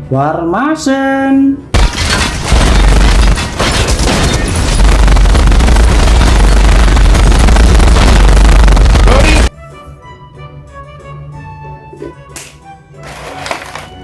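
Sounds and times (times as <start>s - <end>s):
gunfire and explosions soundtrack: 1.8s - 9.5s.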